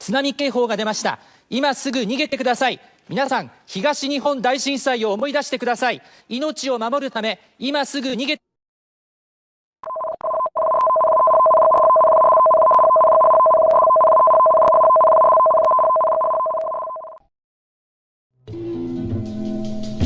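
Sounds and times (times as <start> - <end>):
two-pitch electronic tone: 9.8 - 17.2.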